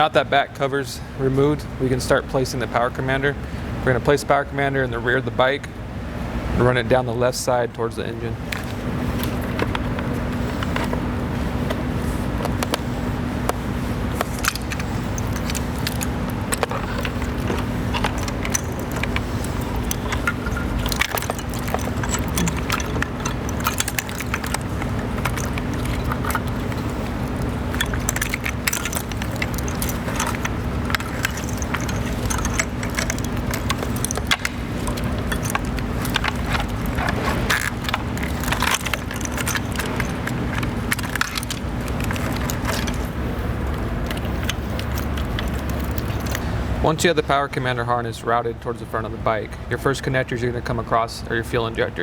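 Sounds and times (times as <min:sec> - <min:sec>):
steady low hum: 0:00.0 - 0:52.0
plastic connectors clicking and rattling: 0:11.7 - 0:46.4.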